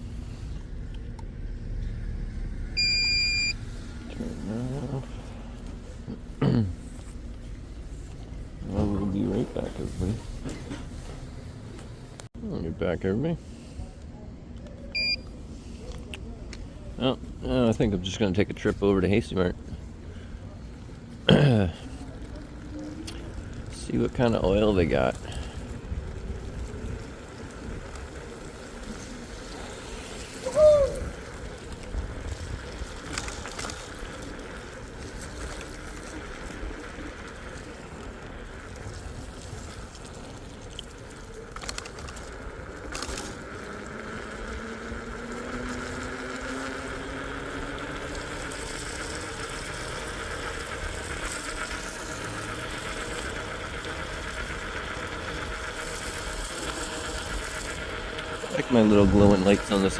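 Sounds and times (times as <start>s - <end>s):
wind and road noise: 0.0s - 12.3s, 15.0s - 59.9s
faint motor whine: 0.0s - 59.9s.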